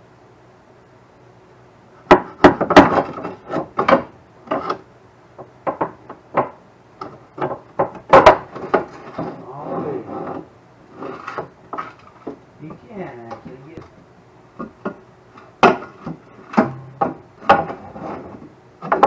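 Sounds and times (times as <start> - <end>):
tools knocking and clanking on metal: 2.1 - 4.8, 15.6 - 17.8.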